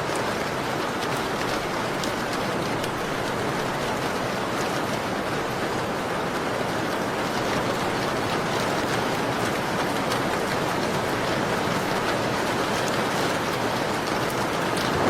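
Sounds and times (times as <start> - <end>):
steady rain hiss: 0.0 - 15.0
wood fire crackles: 11.9 - 15.0.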